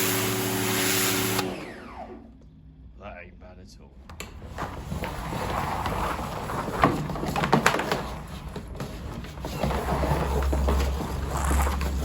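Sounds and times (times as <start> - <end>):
plastic scraping and rattling: 4.2 - 12.0.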